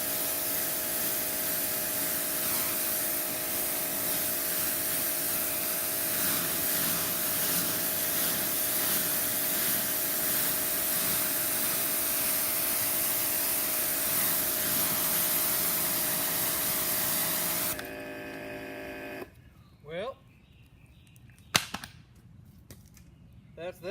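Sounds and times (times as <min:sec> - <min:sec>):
pressure washer spray hissing: 0:00.0 - 0:17.9
pump motor whine: 0:00.0 - 0:19.3.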